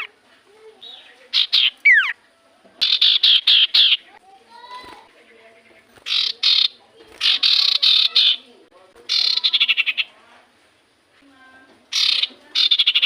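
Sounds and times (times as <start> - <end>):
songbird chattering trills: 0.8 - 2.2, 2.8 - 10.2, 11.9 - 13.0
soft bird call: 2.8 - 8.5, 9.1 - 10.2, 11.9 - 13.0.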